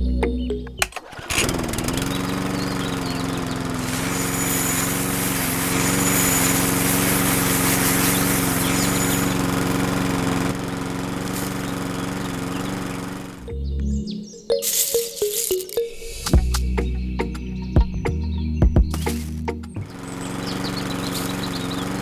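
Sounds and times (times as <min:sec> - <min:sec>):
small electric motor running: 0:01.1 - 0:13.5, 0:19.0 - 0:22.0
coarse hiss: 0:03.8 - 0:09.4.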